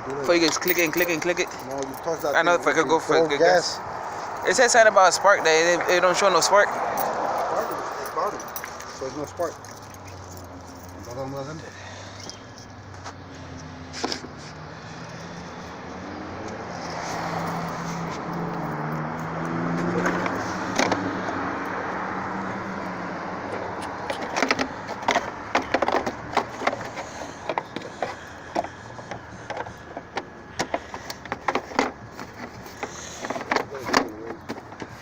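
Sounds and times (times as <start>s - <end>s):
sharp clicks and rattles: 4.1s - 12.8s, 23.5s - 35.0s.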